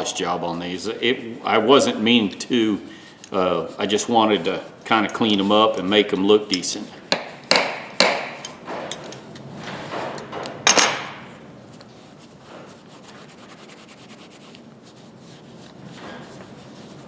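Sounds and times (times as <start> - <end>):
loud metal clack: 9.9 - 11.3.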